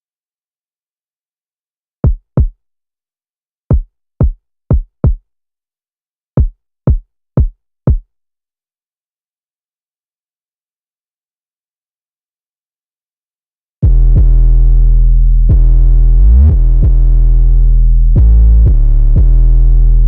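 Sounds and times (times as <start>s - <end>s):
electronic kick drum hits: 13.8s - 14.4s.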